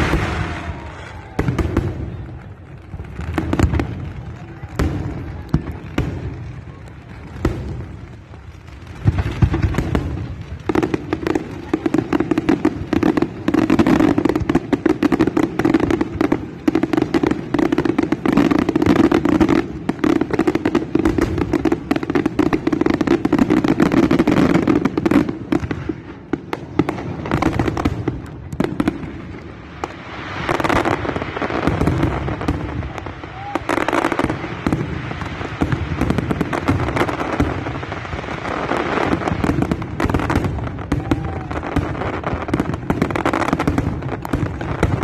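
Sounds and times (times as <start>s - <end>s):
fireworks bangs and crackles: 0.0s - 45.0s.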